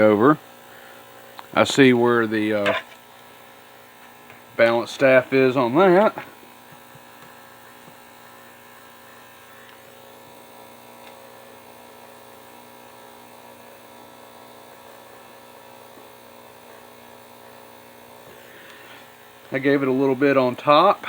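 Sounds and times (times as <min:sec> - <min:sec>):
ultrasonic cleaner humming: 0:00.0 - 0:21.0.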